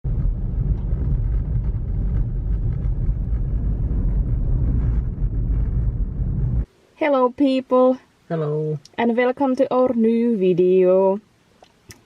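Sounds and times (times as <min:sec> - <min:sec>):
car road and engine rumble: 0:00.0 - 0:06.8.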